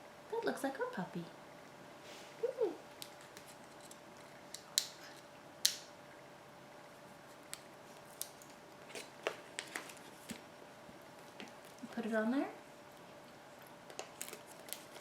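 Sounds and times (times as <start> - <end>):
faint steady hum: 0.0 - 15.0
paper stickers crinkling: 13.9 - 15.0.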